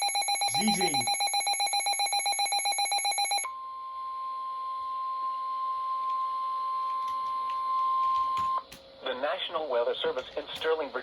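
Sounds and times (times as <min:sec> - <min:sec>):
steady single-pitch alert tone: 0:00.0 - 0:06.7.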